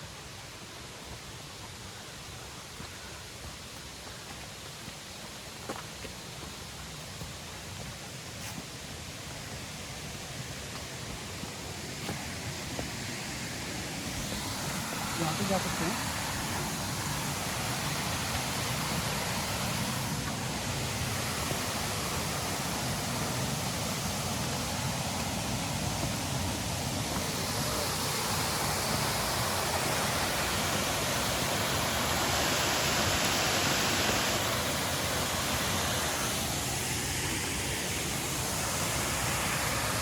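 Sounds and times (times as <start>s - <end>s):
waterfall rushing: 9.0s - 40.0s.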